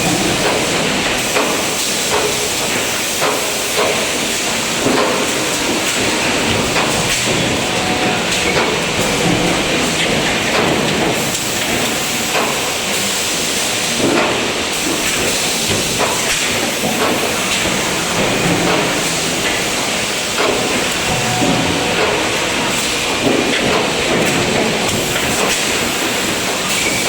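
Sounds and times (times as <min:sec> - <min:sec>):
welding machine hiss: 0:00.0 - 0:27.0.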